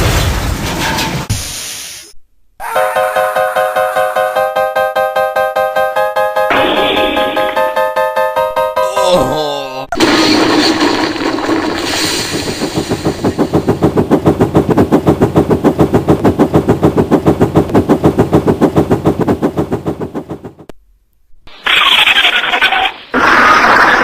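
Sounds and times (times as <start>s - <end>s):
steam locomotive chuffing: 11.9s - 20.6s.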